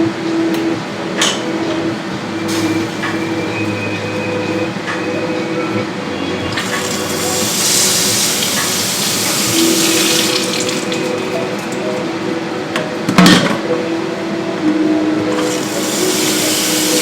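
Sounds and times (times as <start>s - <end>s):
tap running into sink: 6.6s - 12.0s.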